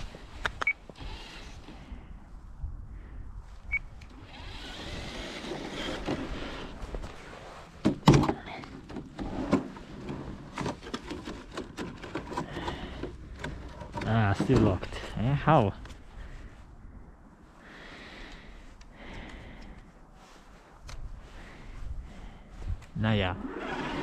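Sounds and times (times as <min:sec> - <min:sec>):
toy truck electric motor whirring: 0:01.0 - 0:01.6, 0:04.2 - 0:06.7, 0:23.4 - 0:24.0.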